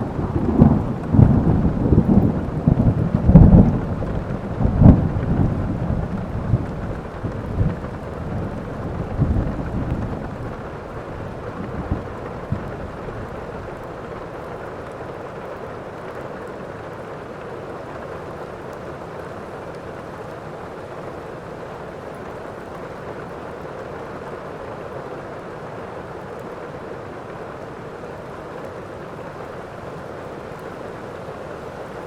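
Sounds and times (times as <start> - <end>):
sharp thunder cracks: 0.0 - 7.8
thunder rumble: 0.0 - 14.4
heavy rain: 0.0 - 32.0.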